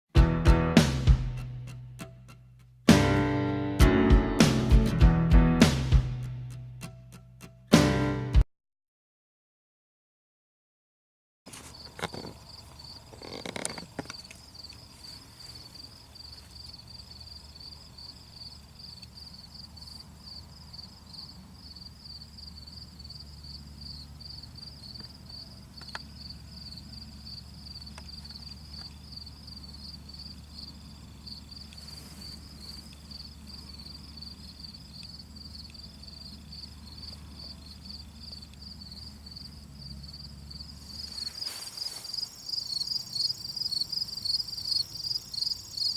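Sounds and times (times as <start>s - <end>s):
insects trilling: 11.5s - 45.9s.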